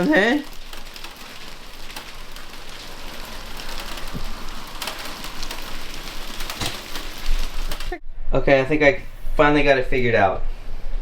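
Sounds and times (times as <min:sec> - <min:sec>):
rain and hail pattering: 0:00.0 - 0:08.0
sharp ticks of hail: 0:00.0 - 0:08.0.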